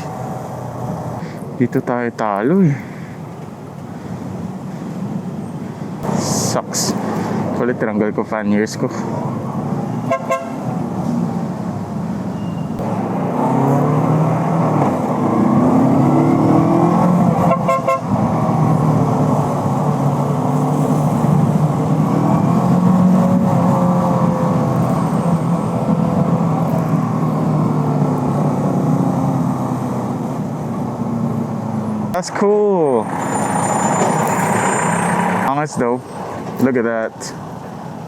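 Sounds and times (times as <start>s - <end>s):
motorcycle engine accelerating: 12.7s - 32.2s.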